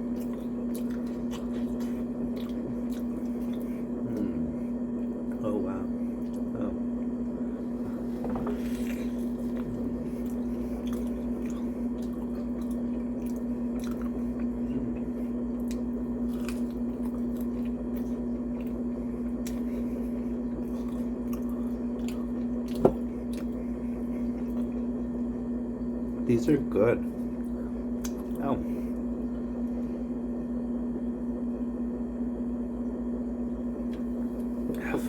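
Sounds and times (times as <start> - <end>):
crunchy chewing: 0.0 - 5.3, 6.2 - 26.2, 27.2 - 29.8
low hum: 0.0 - 35.0
wet mouth clicks: 28.0 - 28.4.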